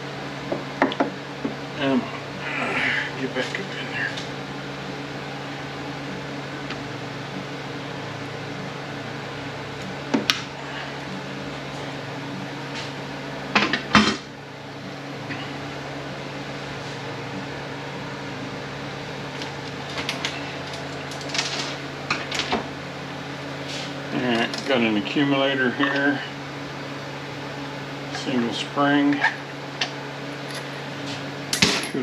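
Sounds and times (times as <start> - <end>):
low shop hum: 0.0 - 32.0
metal tools clinking and clanking: 31.6 - 32.0.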